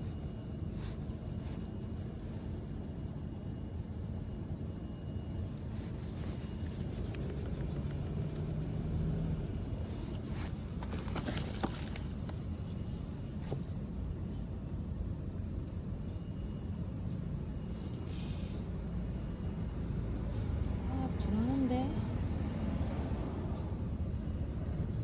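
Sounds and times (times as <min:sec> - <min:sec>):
low outdoor rumble: 0:00.0 - 0:25.0
rustles and clicks: 0:09.8 - 0:13.8.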